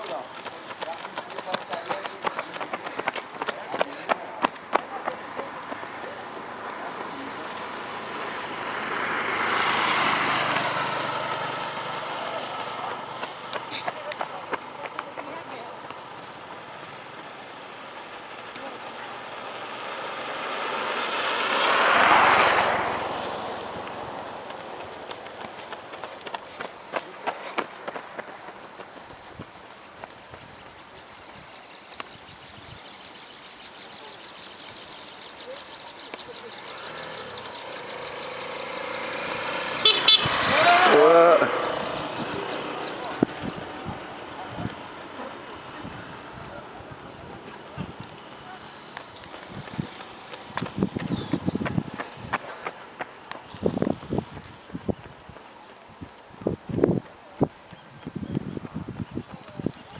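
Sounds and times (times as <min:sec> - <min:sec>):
vehicle passing by: 0:00.0 - 0:29.2, 0:29.8 - 0:55.8
insects buzzing trill: 0:29.6 - 0:40.5.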